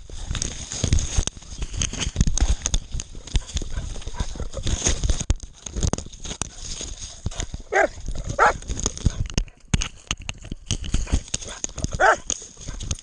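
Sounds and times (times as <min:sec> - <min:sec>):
camera thumping and rustling: 0:00.0 - 0:13.0
dog barking: 0:07.7 - 0:08.6, 0:11.9 - 0:12.3.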